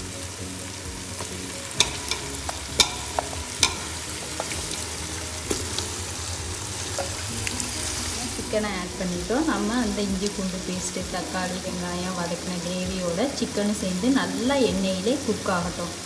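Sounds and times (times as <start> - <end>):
chicken sizzling in a pot: 0.0 - 16.0
utensil knocking against pot: 1.8 - 6.0.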